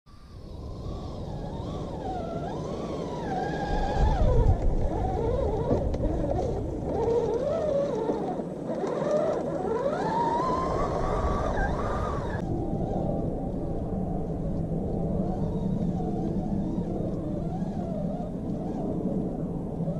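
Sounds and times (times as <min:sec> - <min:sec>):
electric motor and gearbox whining: 0:00.3 - 0:13.1, 0:14.0 - 0:19.9
low rumble: 0:10.6 - 0:19.9.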